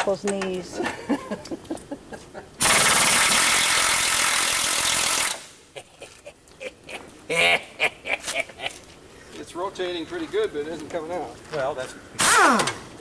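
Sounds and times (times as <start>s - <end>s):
air impact wrench hammering: 2.6s - 5.5s.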